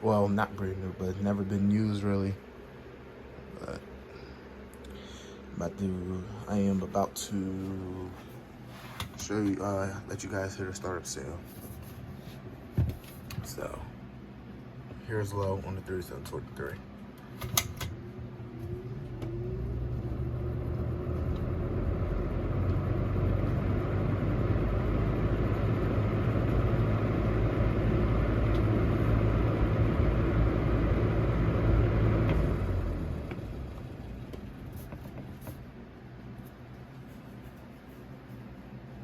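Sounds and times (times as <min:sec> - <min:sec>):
box fan motor whine and hum: 0:00.0 - 0:39.0
fan air rushing: 0:00.0 - 0:39.0
fan switch click: 0:17.2 - 0:18.0.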